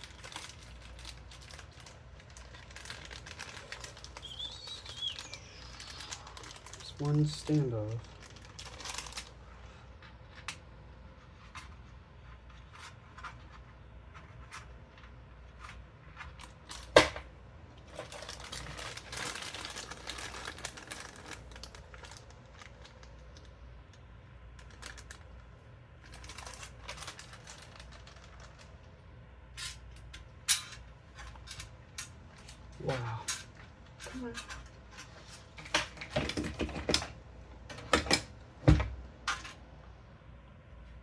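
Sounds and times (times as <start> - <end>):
small metal parts clinking: 0.0 - 9.4, 15.6 - 24.0, 24.6 - 28.8, 29.5 - 38.3.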